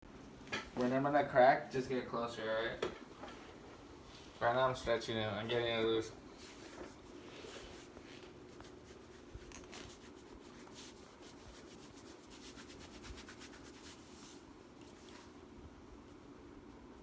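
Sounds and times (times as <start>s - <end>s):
hands rubbing over back: 1.8s - 15.4s.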